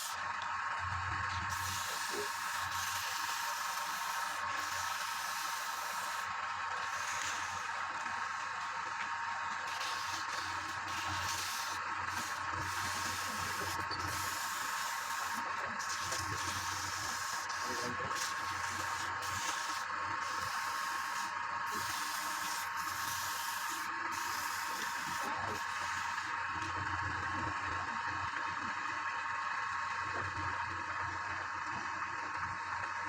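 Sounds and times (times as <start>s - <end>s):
wood lathe whining: 1.4s - 26.6s.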